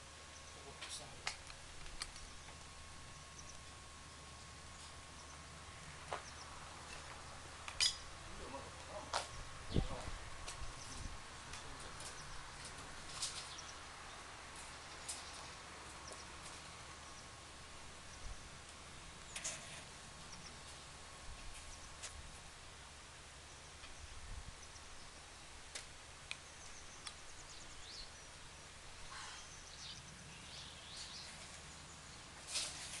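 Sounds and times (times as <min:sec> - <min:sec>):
faint bird chirps: 0:26.4 - 0:32.2.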